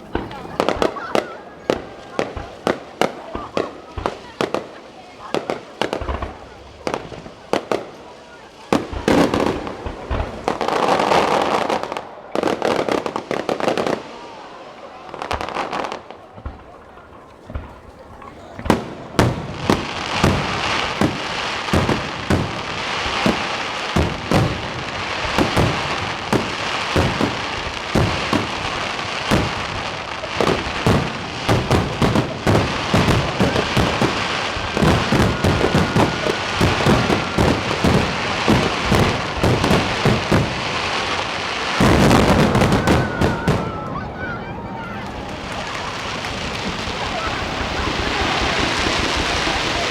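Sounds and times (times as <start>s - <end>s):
fireworks shells bursting: 15.1s - 49.9s.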